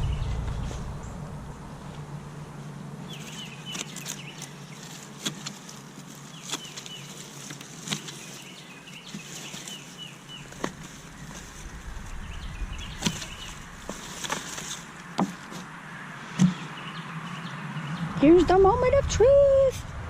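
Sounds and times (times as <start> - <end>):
light rustling: 3.1 - 15.7
small bird chirping: 6.2 - 14.4.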